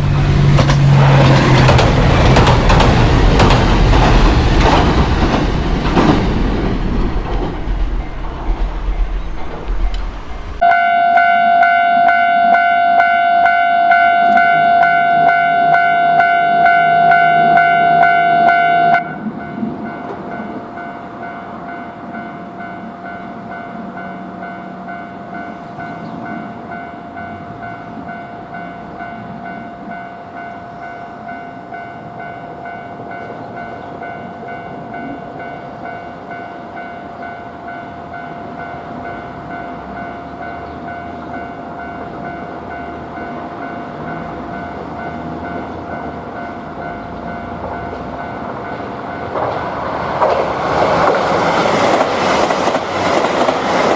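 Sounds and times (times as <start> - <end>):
level crossing alarm bell ringing: 10.6 - 19.2.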